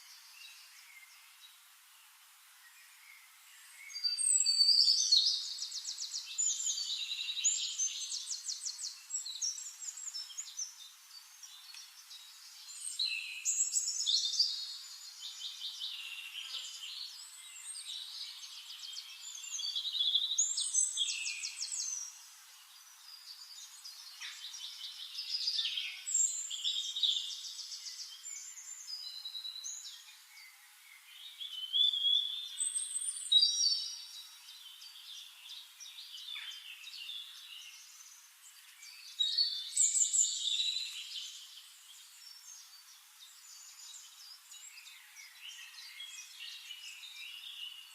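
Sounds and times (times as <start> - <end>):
bird chirping: 0.0 - 47.9
songbirds trilling and warbling: 0.0 - 47.9.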